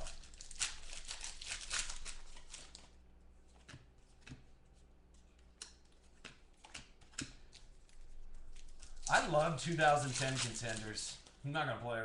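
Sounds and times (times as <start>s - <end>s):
trading cards rustling: 0.0s - 2.9s, 3.5s - 11.4s.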